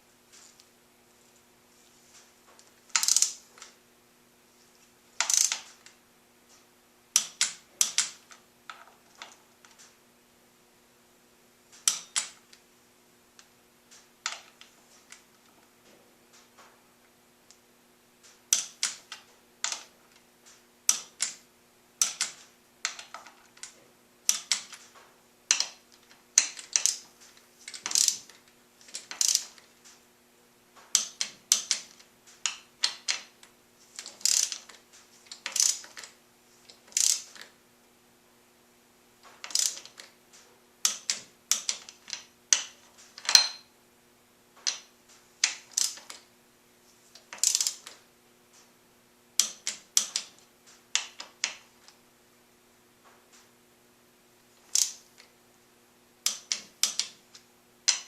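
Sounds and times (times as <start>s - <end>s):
faint steady hum: 0.0s - 58.0s
hand ratchet clicking: 3.0s - 3.4s, 5.2s - 5.8s, 7.2s - 8.3s, 11.8s - 12.4s, 18.5s - 19.9s, 20.9s - 21.4s, 22.0s - 23.7s, 24.3s - 24.8s, 25.5s - 27.0s, 27.7s - 29.7s, 30.9s - 33.3s, 33.9s - 36.1s, 36.7s - 37.4s, 39.4s - 40.0s, 40.9s - 43.6s, 45.4s - 46.2s, 47.2s - 48.0s, 49.4s - 50.3s, 54.7s - 55.0s, 56.3s - 57.2s.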